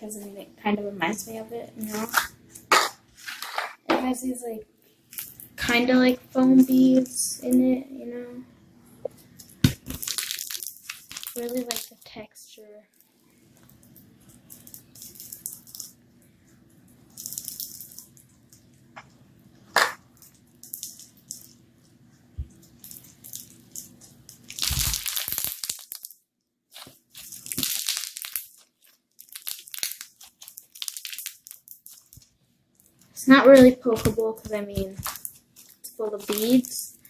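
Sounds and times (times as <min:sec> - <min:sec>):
slime crunching and crackling: 0:09.6 - 0:12.1, 0:22.6 - 0:37.0.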